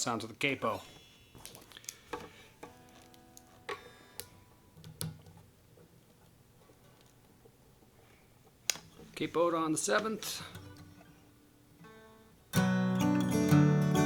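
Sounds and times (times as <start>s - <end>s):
guitar strings ringing faintly: 11.8s - 14.0s.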